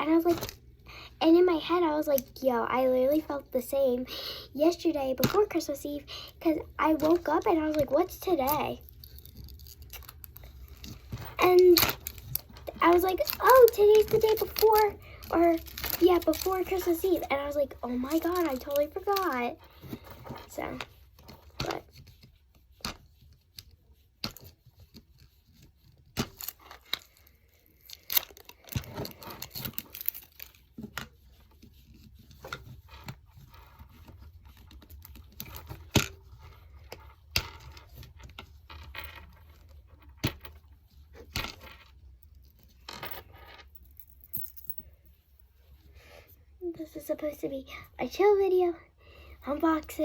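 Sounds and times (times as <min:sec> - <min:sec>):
sharp clicks and scrapes: 0:06.9 - 0:40.6.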